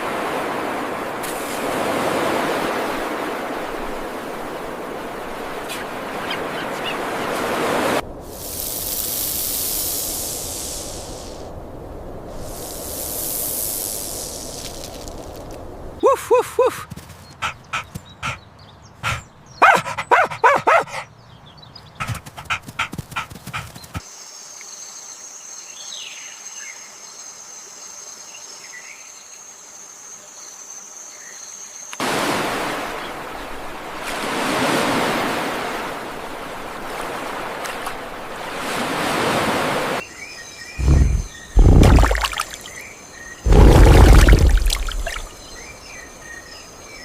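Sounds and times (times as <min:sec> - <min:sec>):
dog barking and yipping: 0:19.0 - 0:21.1
long rushing noise: 0:40.8 - 0:42.6, 0:43.4 - 0:45.3.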